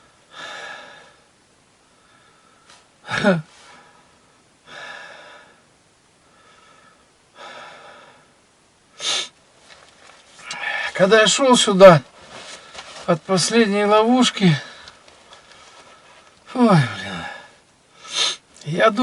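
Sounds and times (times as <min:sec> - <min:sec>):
man breathing heavily: 0:00.0 - 0:08.4, 0:10.4 - 0:11.1, 0:14.4 - 0:18.5.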